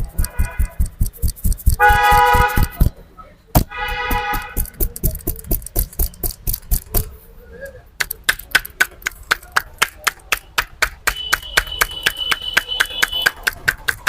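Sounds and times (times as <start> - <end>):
hands slapping in massage: 0.0 - 2.9, 8.0 - 14.0
vehicle horn honking: 0.2 - 0.8, 1.8 - 2.9, 3.6 - 4.7, 11.1 - 13.4.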